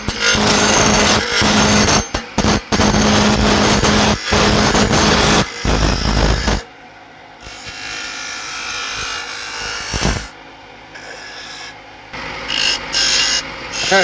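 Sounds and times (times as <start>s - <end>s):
gouge cutting wood on lathe: 0.0s - 5.7s, 12.5s - 14.0s.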